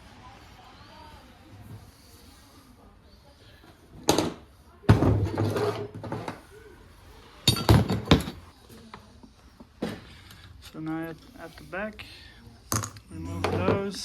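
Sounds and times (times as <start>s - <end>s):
tools knocking and clattering: 7.5s - 8.5s.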